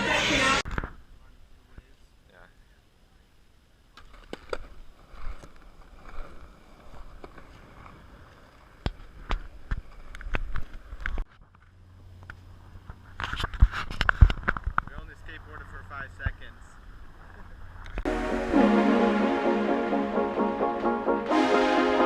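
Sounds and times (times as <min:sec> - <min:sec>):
skateboard wheels rolling on pavement: 0:04.4 - 0:11.1.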